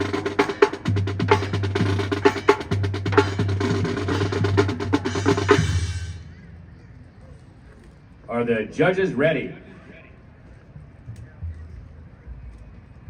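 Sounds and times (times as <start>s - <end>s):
bass drums: 0.0s - 6.2s.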